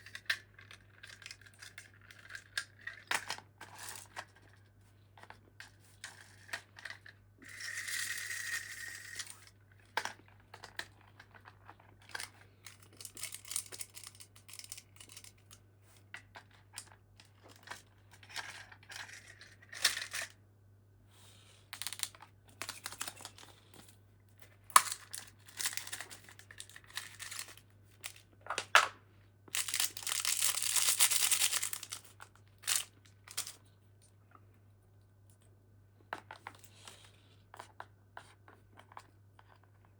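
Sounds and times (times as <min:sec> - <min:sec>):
packaging tearing and crinkling: 0:24.7 - 0:28.2, 0:29.5 - 0:33.6.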